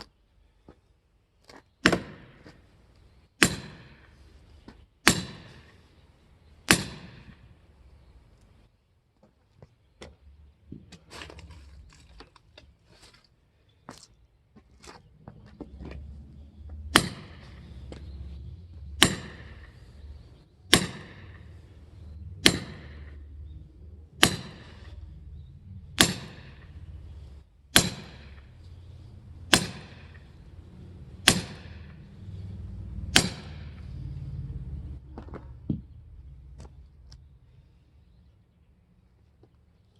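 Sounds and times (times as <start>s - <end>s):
axe chopping firewood: 1.8s - 2.6s, 3.4s - 4.0s, 5.0s - 5.7s, 6.7s - 7.4s, 16.7s - 18.1s, 18.9s - 19.8s, 20.7s - 21.5s, 22.4s - 23.2s, 24.2s - 25.0s, 26.0s - 26.8s, 27.7s - 28.7s, 29.4s - 30.3s, 31.2s - 32.0s, 33.0s - 33.8s.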